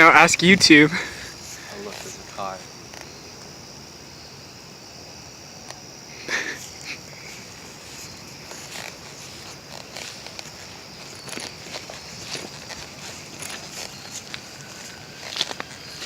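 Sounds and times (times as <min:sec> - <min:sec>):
steady high hiss: 0:00.0 - 0:16.0
footsteps on grass and leaves: 0:00.9 - 0:03.2, 0:06.7 - 0:16.0.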